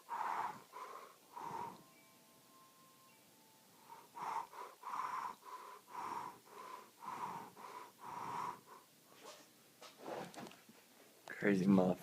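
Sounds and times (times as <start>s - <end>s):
person panting hard: 0.0s - 1.9s, 3.8s - 8.9s.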